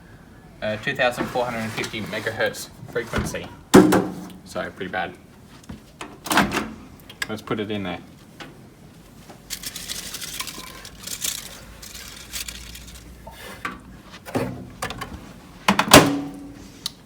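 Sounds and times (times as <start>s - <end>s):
crackly handling noise: 8.1s - 15.9s
foil wrappers clinking and rustling: 9.4s - 13.3s.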